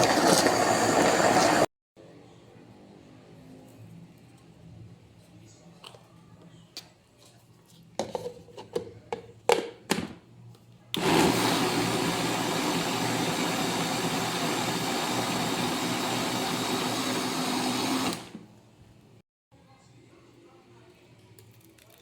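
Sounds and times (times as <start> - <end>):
countertop blender running: 0.0 - 1.7, 11.0 - 18.5.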